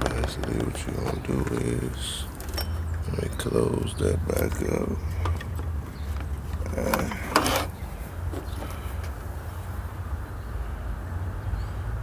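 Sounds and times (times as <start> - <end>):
rattling scrape: 4.3 - 9.1.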